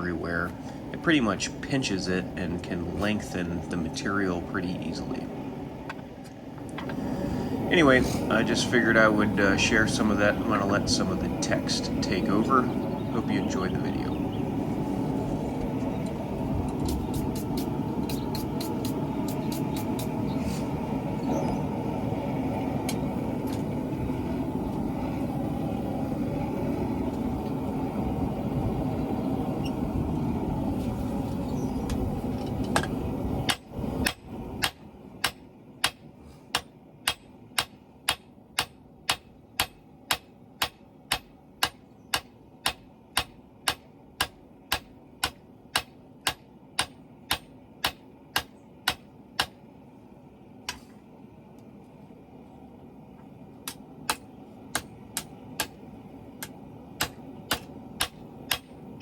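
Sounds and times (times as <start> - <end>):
steady rushing noise: 0.0 - 38.2.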